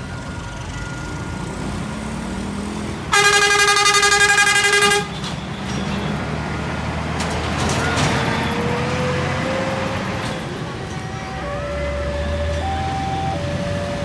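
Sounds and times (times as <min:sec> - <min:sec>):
passing road traffic: 0:00.0 - 0:14.0
truck engine rumble: 0:00.0 - 0:14.0
truck horn blast: 0:03.1 - 0:05.2.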